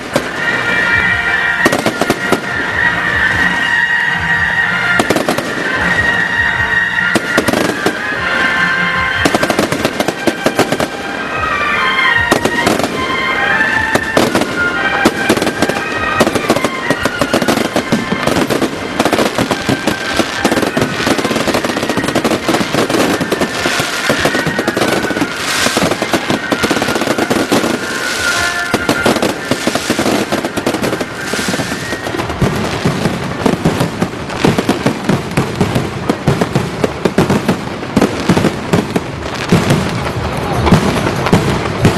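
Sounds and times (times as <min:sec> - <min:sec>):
firecrackers crackling and popping: 0:00.0 - 0:41.9
shrill rocket whistles: 0:12.2 - 0:33.6.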